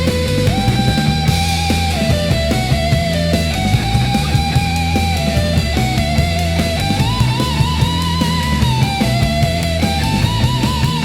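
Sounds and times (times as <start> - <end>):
instrumental psychedelic rock: 0.0 - 11.0.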